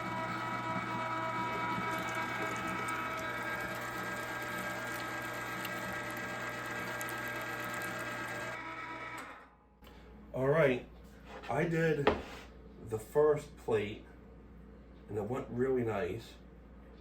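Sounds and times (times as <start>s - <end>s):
electric meat grinder running: 0.0s - 9.5s.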